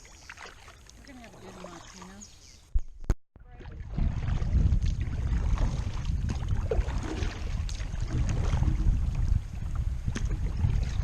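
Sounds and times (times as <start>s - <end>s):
paddle splashes: 0.0s - 2.3s, 3.4s - 11.0s
moving water: 0.0s - 11.0s
wind on microphone: 2.6s - 11.0s.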